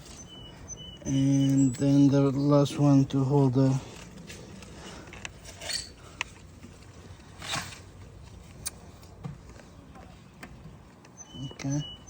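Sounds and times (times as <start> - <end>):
scrapes of parts: 3.9 - 8.0.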